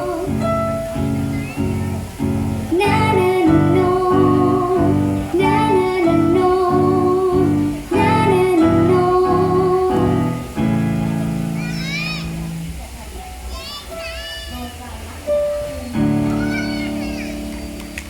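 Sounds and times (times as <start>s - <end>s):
woman singing: 0.0s - 0.4s, 2.7s - 10.5s.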